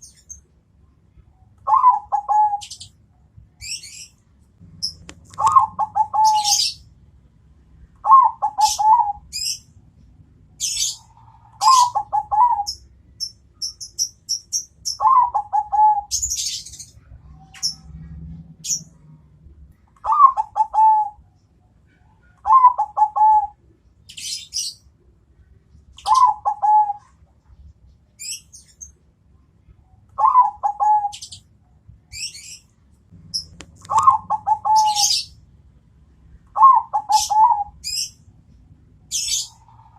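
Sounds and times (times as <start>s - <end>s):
small birds chirping: 0.0s - 7.0s, 7.8s - 35.5s, 36.3s - 39.9s
dove cooing: 1.6s - 2.8s, 4.8s - 6.8s, 8.0s - 9.6s, 10.6s - 12.8s, 15.0s - 18.0s, 20.0s - 21.2s, 22.3s - 23.6s, 26.0s - 27.2s, 30.1s - 31.4s, 33.3s - 35.3s, 36.6s - 38.1s.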